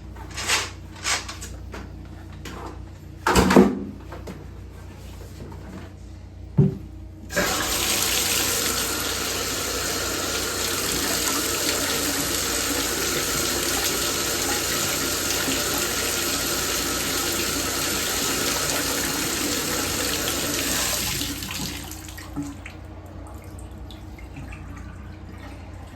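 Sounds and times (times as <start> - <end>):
bathtub faucet running: 7.3 - 25.9.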